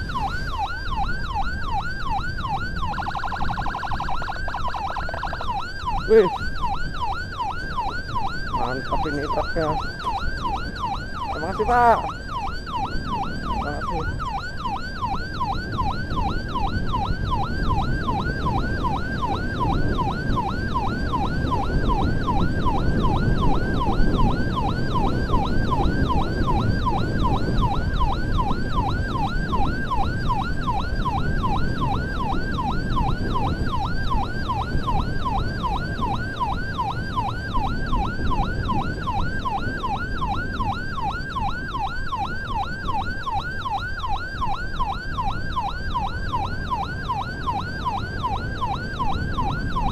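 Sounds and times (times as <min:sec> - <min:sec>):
ambulance siren yelping: 0:00.0 - 0:49.9
vehicle rumble on road: 0:00.0 - 0:49.9.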